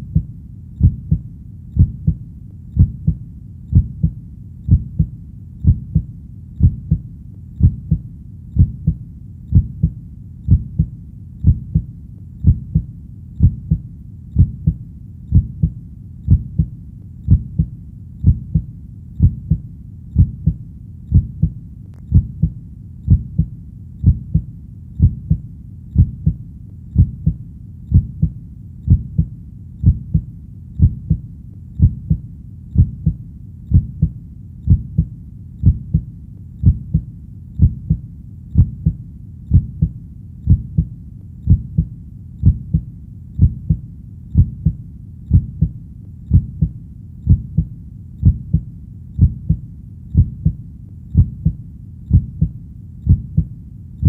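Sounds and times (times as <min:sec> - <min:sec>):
heartbeat thumps: 0:00.0 - 0:53.6.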